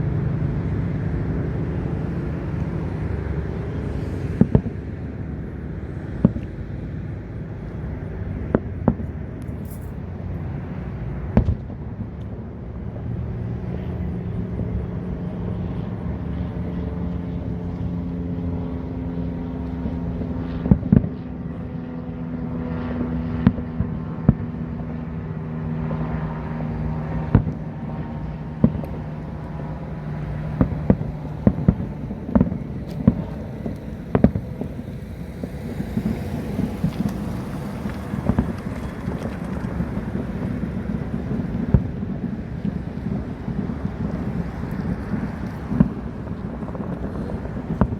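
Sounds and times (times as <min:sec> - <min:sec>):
steady low hum: 0:00.0 - 0:47.9
fireworks bangs and pops: 0:04.3 - 0:04.8, 0:11.3 - 0:12.3, 0:28.6 - 0:35.0, 0:35.6 - 0:47.9
wind on microphone: 0:22.5 - 0:47.9.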